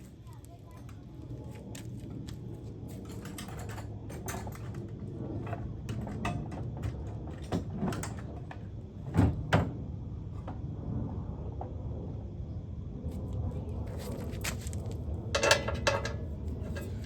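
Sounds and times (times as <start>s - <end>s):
metal tools clicking and knocking: 15.4s - 17.0s.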